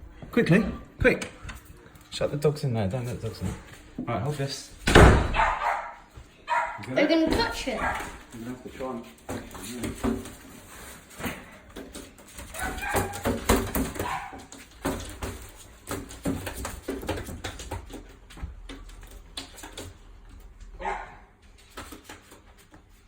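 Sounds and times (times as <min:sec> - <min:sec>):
knocks and rustles of handling: 0:07.2 - 0:20.7
dogs whining: 0:12.5 - 0:14.4.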